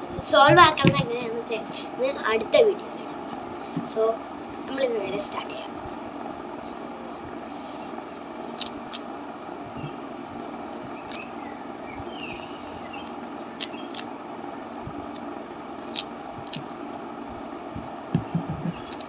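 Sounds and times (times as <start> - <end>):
background hum: 0.0 - 19.0
rubik's cube clicking: 8.6 - 9.0, 13.6 - 14.1, 15.1 - 16.7.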